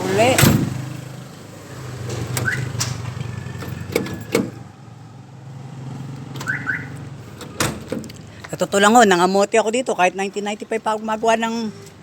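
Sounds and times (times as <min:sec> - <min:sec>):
door lock actuators clicking: 0:02.1 - 0:04.6.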